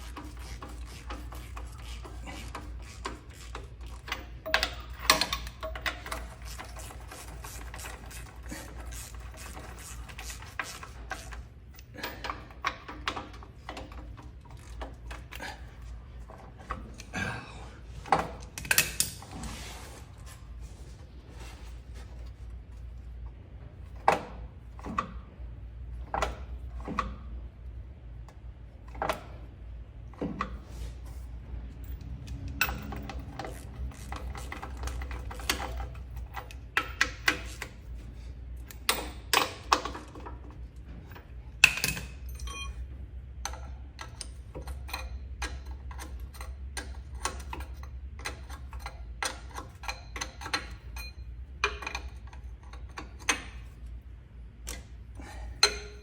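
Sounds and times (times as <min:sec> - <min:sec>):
hand tools clicking on metal: 0:00.0 - 0:15.6, 0:55.6 - 0:56.0
steady low hum: 0:00.0 - 0:56.0.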